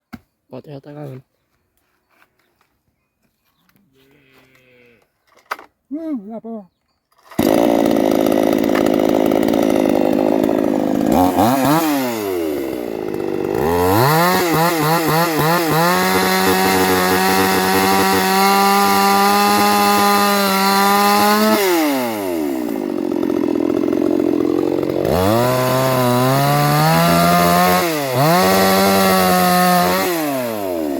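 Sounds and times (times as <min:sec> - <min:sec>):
chainsaw engine idling and revving: 0:07.3 - 0:30.9.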